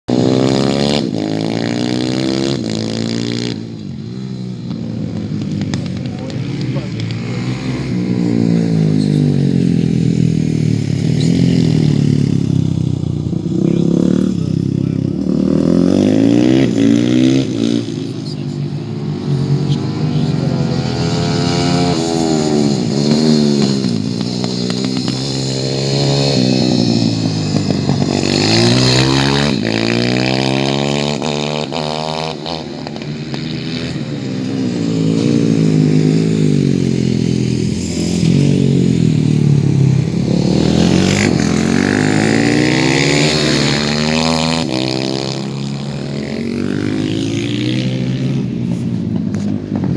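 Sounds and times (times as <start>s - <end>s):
racing engine shifting gears: 13.4s - 36.6s.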